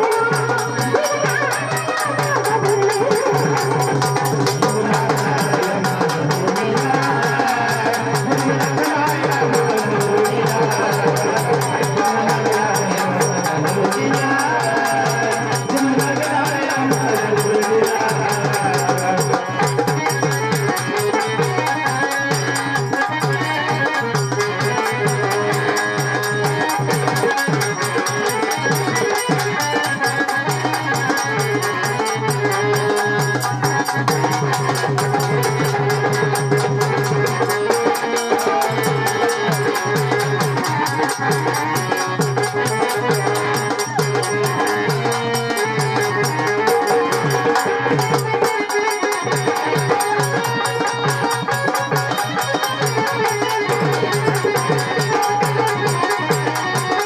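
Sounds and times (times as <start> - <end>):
woman singing: 0.0 - 19.6
rhythmic drum and percussion: 0.0 - 57.0.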